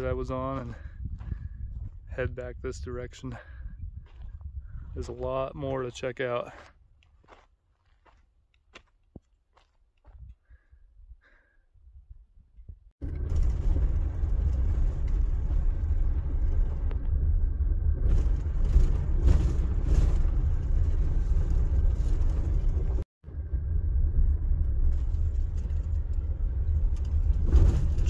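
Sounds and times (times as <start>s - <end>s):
vehicle driving on dirt road: 13.0s - 28.0s.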